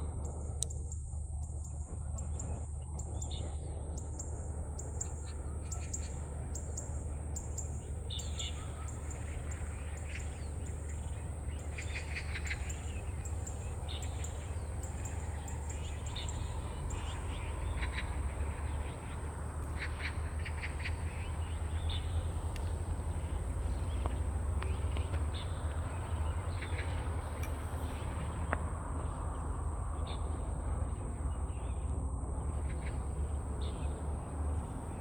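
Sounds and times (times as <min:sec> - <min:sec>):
bird clicking calls: 0:04.8 - 0:29.1, 0:32.5 - 0:35.0.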